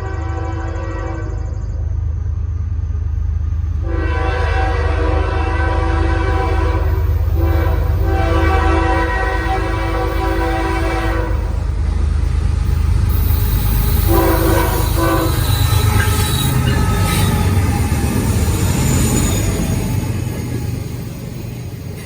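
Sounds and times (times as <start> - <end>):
diesel locomotive horn blasts: 0.0 - 1.6, 3.8 - 11.6, 13.8 - 19.4
train passing rumble: 0.0 - 22.0.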